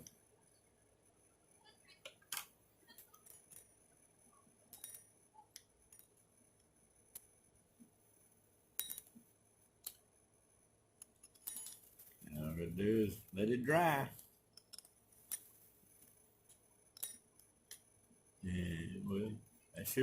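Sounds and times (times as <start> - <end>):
faint clicks of small objects: 8.8 - 10.1, 14.2 - 17.9.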